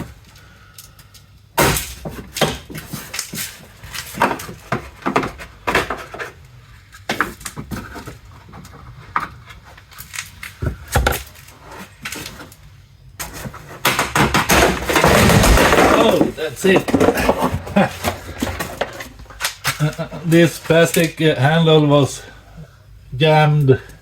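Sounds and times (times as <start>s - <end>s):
heavy thump: 14.8s - 19.3s.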